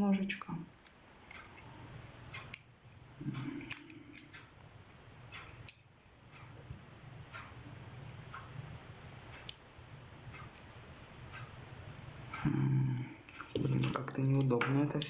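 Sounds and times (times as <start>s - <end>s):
faint low hum: 0.0s - 15.0s
metal tool parts clicking: 3.6s - 4.4s.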